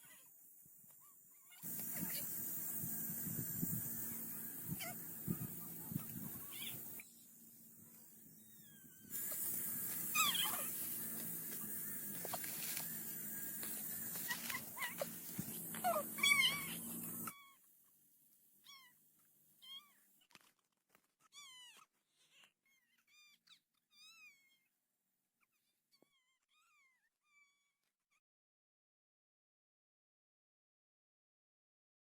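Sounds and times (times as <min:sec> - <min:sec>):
short high animal calls: 0:08.4 - 0:17.5.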